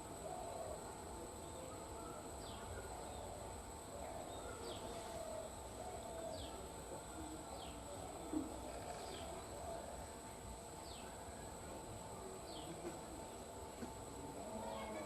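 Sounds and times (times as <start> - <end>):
bird chatter: 7.6 - 9.9.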